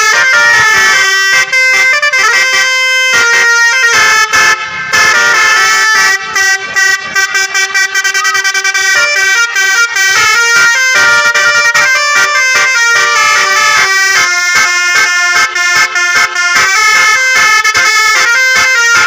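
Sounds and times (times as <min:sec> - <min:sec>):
musical air horns playing melody: 0:00.0 - 0:19.0.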